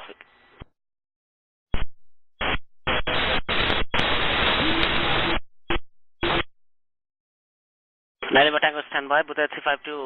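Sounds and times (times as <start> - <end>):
radio static bursts: 1.8 - 6.5.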